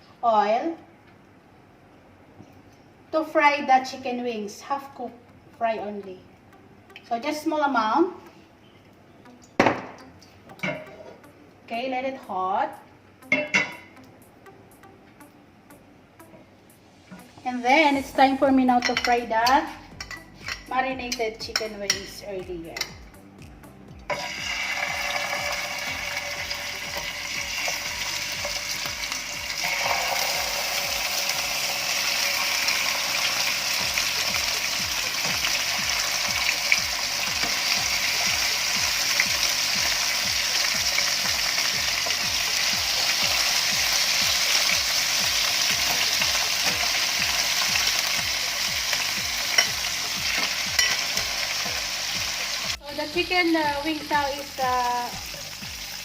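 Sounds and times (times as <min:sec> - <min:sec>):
chicken sizzling in hot oil: 0:24.1 - 0:56.0.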